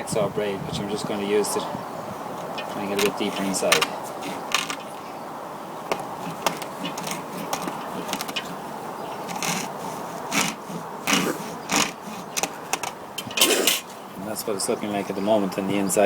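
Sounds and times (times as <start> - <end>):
hacksaw sawing into leather: 2.8 - 5.0, 5.9 - 8.6, 9.2 - 13.9.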